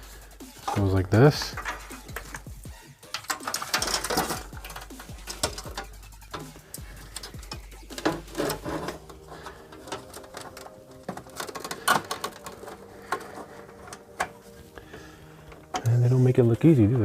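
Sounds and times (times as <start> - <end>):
cables rustling: 0.0 - 16.9
clicks and knocks: 1.5 - 15.9.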